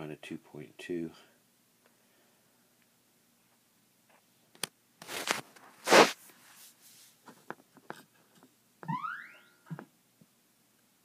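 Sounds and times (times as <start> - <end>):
rustling scrapes: 5.0 - 8.1
rising electronic chirp: 8.9 - 9.6.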